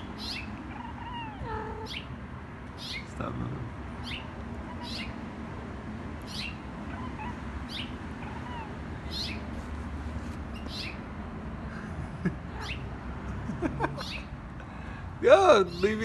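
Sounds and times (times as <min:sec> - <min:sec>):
bird chirping: 0:00.0 - 0:03.2, 0:03.9 - 0:05.3, 0:06.2 - 0:11.1, 0:12.5 - 0:12.9, 0:14.0 - 0:14.3, 0:15.6 - 0:16.0.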